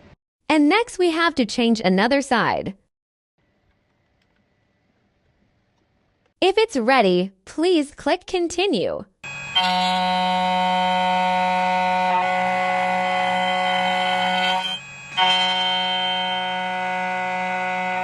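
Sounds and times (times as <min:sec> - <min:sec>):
key cutting machine whine: 0:09.3 - 0:18.0.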